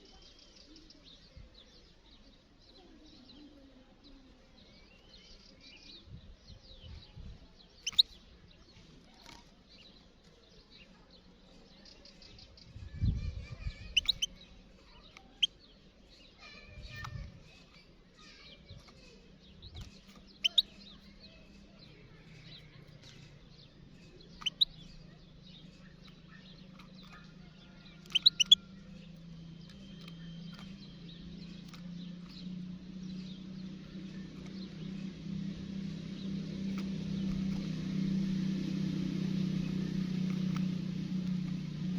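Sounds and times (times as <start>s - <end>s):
finches calling and twittering: 0.0s - 41.9s
fainter chirping: 7.8s - 8.2s, 13.7s - 14.4s, 18.6s - 41.9s
low engine hum: 12.1s - 15.5s, 16.6s - 41.9s.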